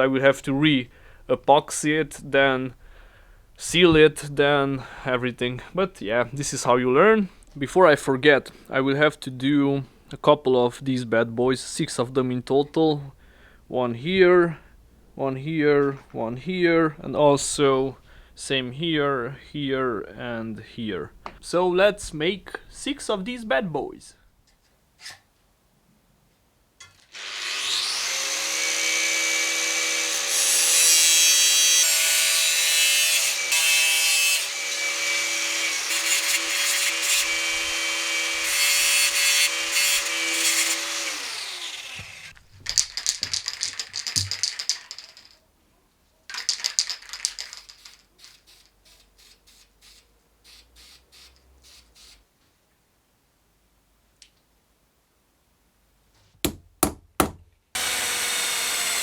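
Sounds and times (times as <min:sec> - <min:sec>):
power tool whining on sheet metal: 0:27.1 - 0:42.4, 0:57.8 - 0:59.0.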